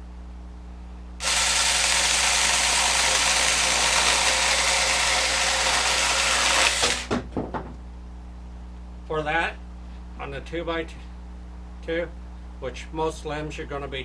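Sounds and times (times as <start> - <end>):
chain cutting through wood: 1.2 - 7.1
mini chainsaw running: 1.2 - 7.1.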